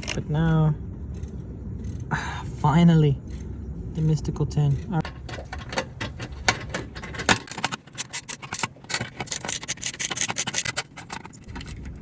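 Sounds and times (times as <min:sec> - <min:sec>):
metal tools rattling: 0:00.0 - 0:00.5, 0:04.6 - 0:12.0
socket ratchet clicking: 0:07.4 - 0:11.1.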